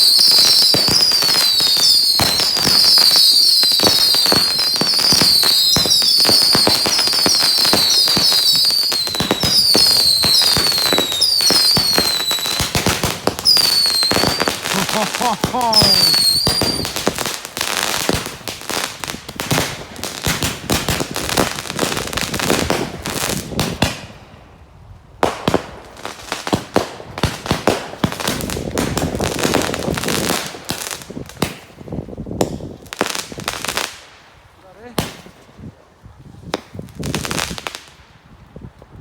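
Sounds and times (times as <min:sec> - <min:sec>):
fireworks crackling bangs: 0:00.0 - 0:24.1, 0:34.8 - 0:35.5.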